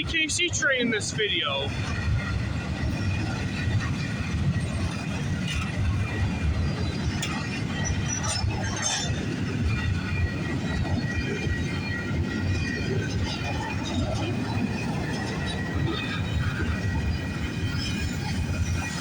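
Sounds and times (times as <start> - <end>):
train wheels rumbling on rail: 0.0 - 19.0
wheel squeal: 6.0 - 11.8.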